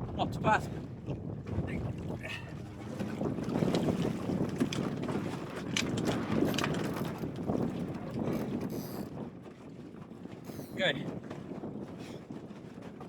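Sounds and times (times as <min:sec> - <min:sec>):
wind buffeting microphone: 0:00.0 - 0:13.0
clicks and knocks from sailing dinghy: 0:02.9 - 0:13.0.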